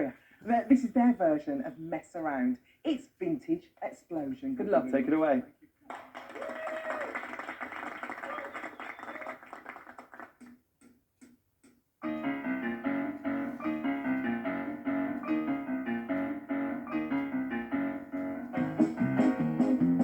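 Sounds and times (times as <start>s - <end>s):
rhythm and blues piano: 11.6s - 20.0s.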